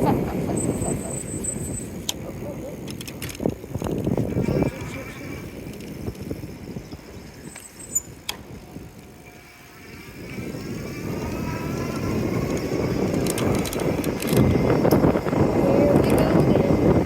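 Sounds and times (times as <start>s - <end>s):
bicycle tyre rumble: 0.0s - 17.0s
wind: 0.0s - 17.0s
sharp clicks: 2.8s - 4.2s.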